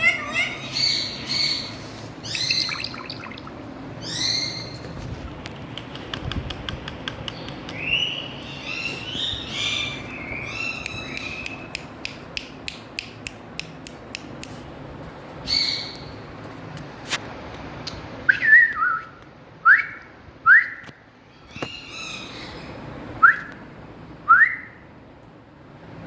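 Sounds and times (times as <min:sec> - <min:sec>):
parrot chirping calls: 0:00.0 - 0:04.9, 0:07.4 - 0:12.0, 0:15.4 - 0:16.2, 0:21.3 - 0:23.0.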